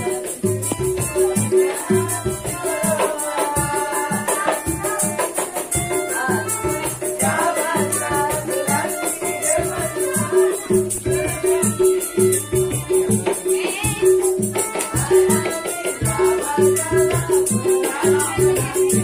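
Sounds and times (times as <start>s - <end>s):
drum beat: 0.0s - 19.0s
busker's melody: 5.8s - 19.0s.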